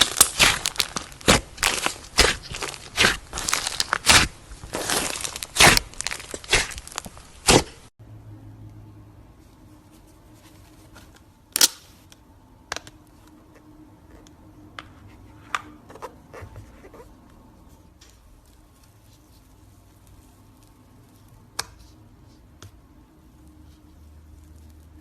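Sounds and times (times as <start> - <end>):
slime crackling and popping: 0.0 - 7.9.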